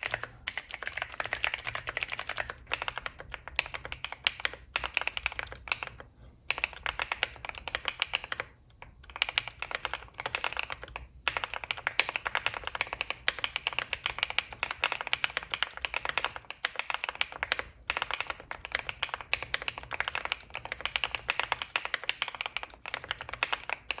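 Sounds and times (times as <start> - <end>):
mechanical keyboard typing: 0.0 - 24.0.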